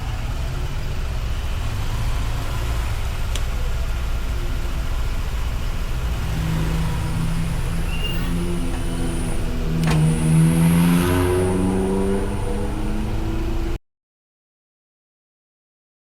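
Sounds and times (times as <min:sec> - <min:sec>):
vehicle engine revving: 0:00.0 - 0:13.8.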